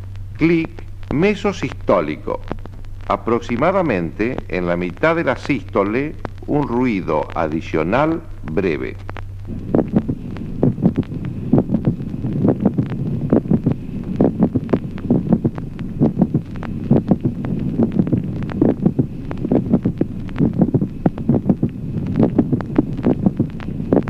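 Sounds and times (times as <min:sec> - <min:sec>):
heartbeat with click: 0:00.0 - 0:24.0.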